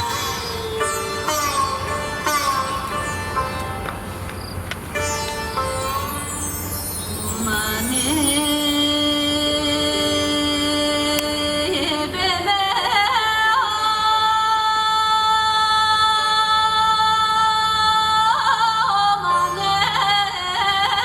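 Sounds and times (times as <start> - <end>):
woman singing slow melody: 7.0 - 21.0.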